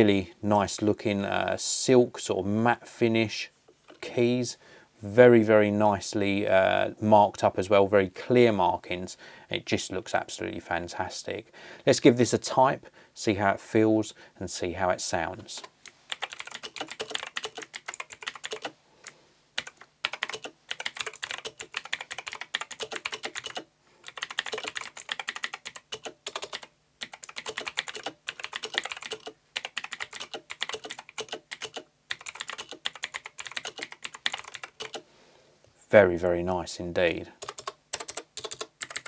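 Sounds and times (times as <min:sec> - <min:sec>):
mechanical keyboard typing: 0:15.6 - 0:18.7, 0:19.6 - 0:35.0, 0:37.4 - 0:39.0.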